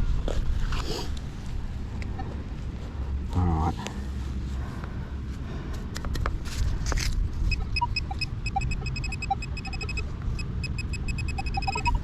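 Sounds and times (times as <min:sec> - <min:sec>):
metal detector pinpointer beeping: 0:07.5 - 0:12.0.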